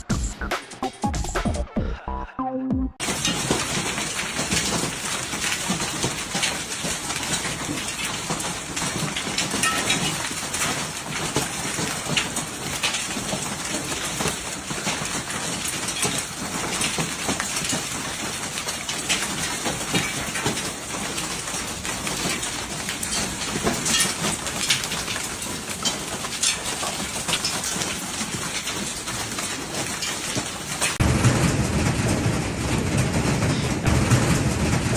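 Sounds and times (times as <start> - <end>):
hailstones striking hard surfaces: 3.0 - 34.9.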